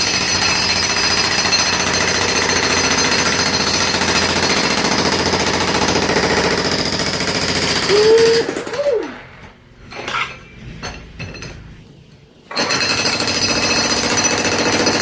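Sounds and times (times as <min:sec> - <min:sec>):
jackhammer breaking concrete: 0:00.0 - 0:08.9, 0:12.5 - 0:15.0.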